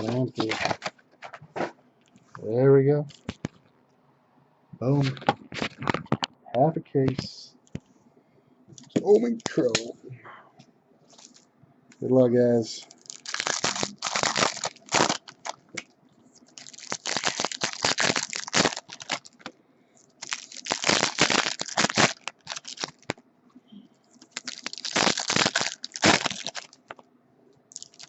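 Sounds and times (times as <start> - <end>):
foil wrappers crinkling: 0.0 - 1.4, 3.1 - 3.6, 12.8 - 23.2, 24.1 - 27.0, 27.7 - 28.0.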